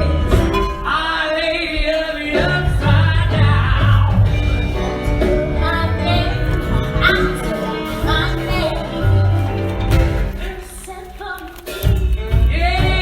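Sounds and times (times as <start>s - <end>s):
band accompaniment: 0.0s - 1.2s, 1.8s - 13.0s
woman singing: 5.2s - 13.0s.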